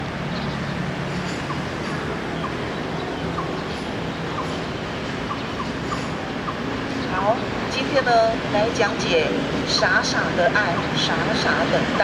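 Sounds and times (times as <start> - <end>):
steady background noise: 0.0 - 12.0
small birds chirping: 0.3 - 7.5.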